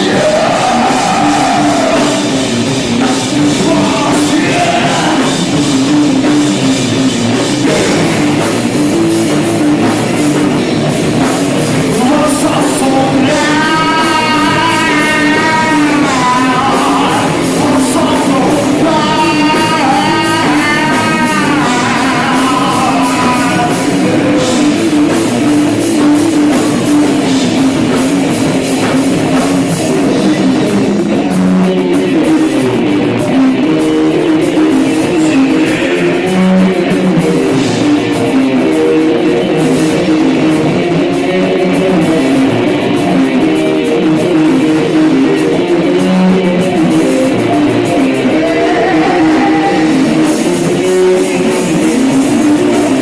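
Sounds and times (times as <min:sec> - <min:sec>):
bass guitar: 0:00.0 - 0:53.0
drum kit: 0:00.0 - 0:53.0
electric guitar: 0:00.0 - 0:53.0.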